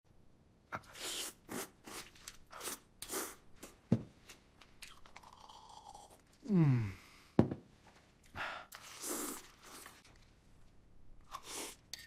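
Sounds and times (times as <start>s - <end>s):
person crunching and chewing: 4.8s - 6.2s.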